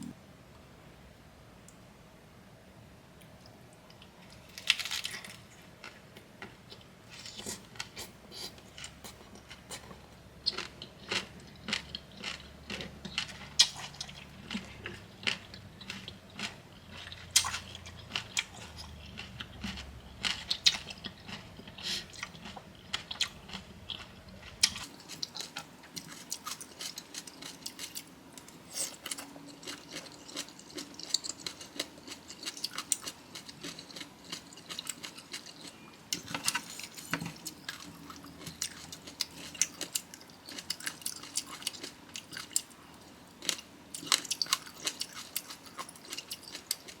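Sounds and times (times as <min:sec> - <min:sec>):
chewing crunchy food: 0:03.9 - 0:47.0.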